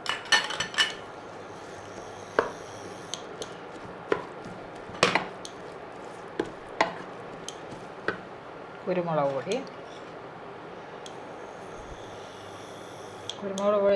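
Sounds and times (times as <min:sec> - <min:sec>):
cooking utensil knocking on pan: 0:02.4 - 0:02.6, 0:03.4 - 0:05.7, 0:06.4 - 0:08.3.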